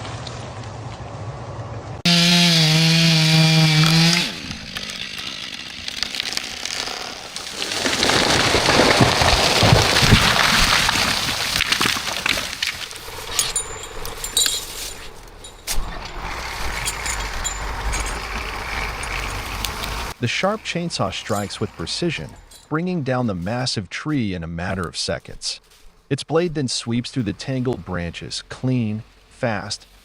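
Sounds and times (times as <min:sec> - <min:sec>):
chainsaw at full throttle: 0:02.1 - 0:10.0
rushing crackling noise: 0:05.2 - 0:22.2
low steady rumble: 0:13.0 - 0:23.3.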